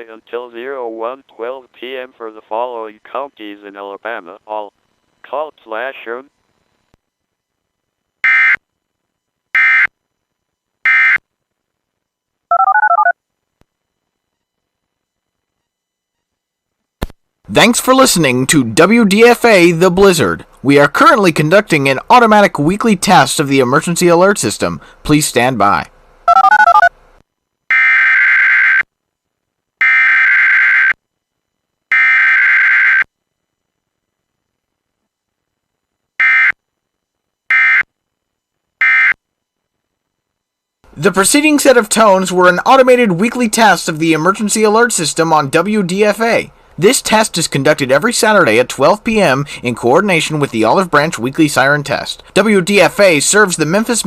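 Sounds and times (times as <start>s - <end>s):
emergency alert data tones: 12.5s - 13.1s, 26.3s - 26.9s
touch-tone beeps: 12.5s - 13.1s, 26.3s - 26.9s.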